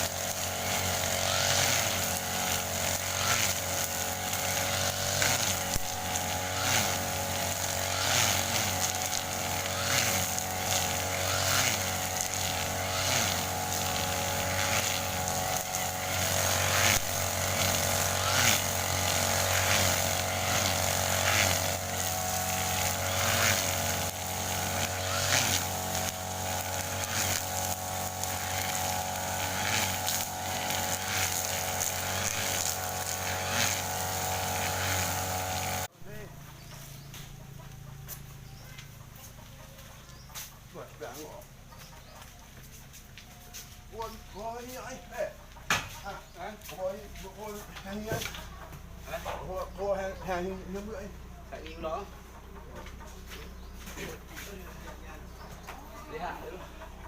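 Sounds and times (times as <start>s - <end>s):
brush cutter swishing through grass: 0.0s - 35.9s
brush cutter running: 0.0s - 57.0s.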